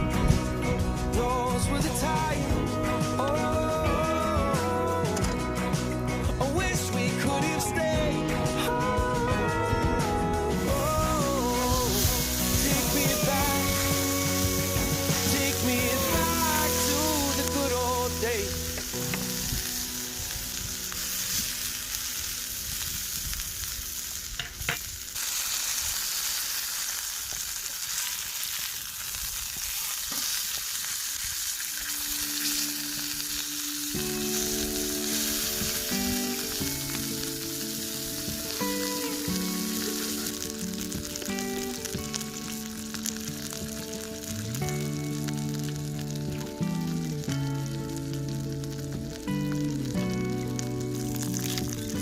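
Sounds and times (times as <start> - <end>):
instrumental background music: 0.0 - 22.3, 31.9 - 52.0
food sizzling in a hot pan: 0.0 - 52.0.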